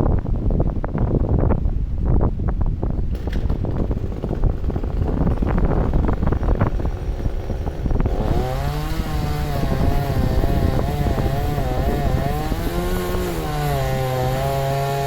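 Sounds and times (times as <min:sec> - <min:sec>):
wind buffeting microphone: 0:00.0 - 0:15.0
chainsaw engine running: 0:03.1 - 0:15.0.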